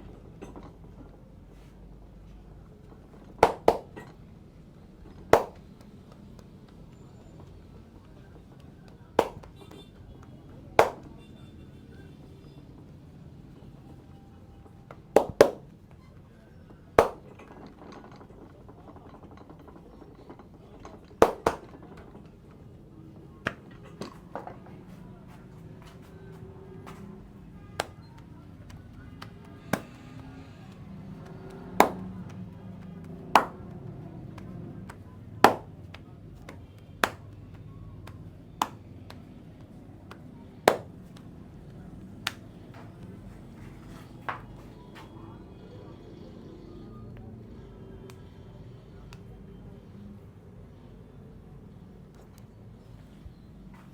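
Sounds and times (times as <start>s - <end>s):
hand slaps on head: 3.4s - 3.9s, 9.2s - 9.5s, 10.8s - 11.1s.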